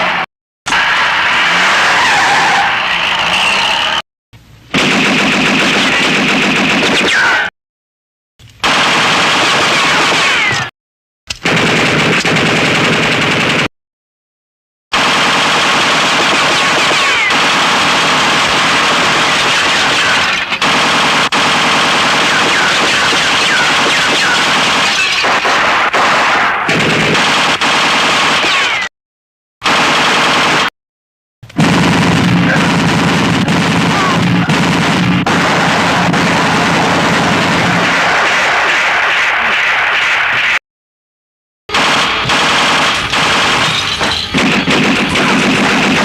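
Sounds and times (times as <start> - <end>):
falling whines: 0.7 - 4.0
automatic gunfire: 4.7 - 7.1, 8.6 - 10.7, 11.4 - 13.7, 15.0 - 28.9, 29.6 - 30.7, 31.6 - 40.6, 41.7 - 46.0
automatic gunfire rattle: 41.7 - 46.0.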